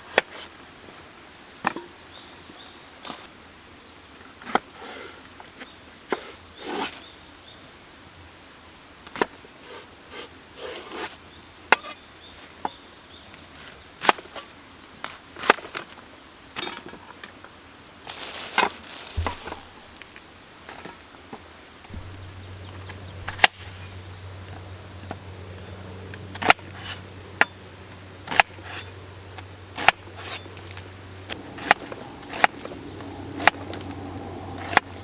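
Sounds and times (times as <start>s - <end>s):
rustling: 18.1s - 21.0s, 21.9s - 25.8s
sharp knocks and taps: 19.2s - 20.3s, 21.9s - 24.2s
low steady hum: 21.9s - 28.2s.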